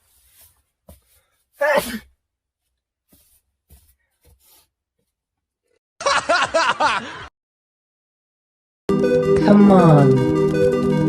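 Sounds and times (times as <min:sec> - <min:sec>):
people laughing: 0:06.0 - 0:07.3.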